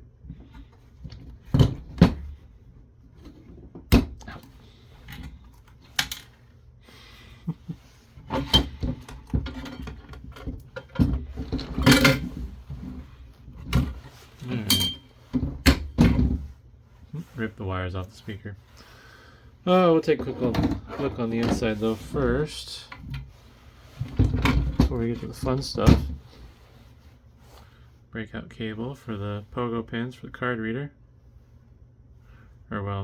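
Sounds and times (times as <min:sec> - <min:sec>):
metal tools clicking and clattering: 0:14.5 - 0:15.1.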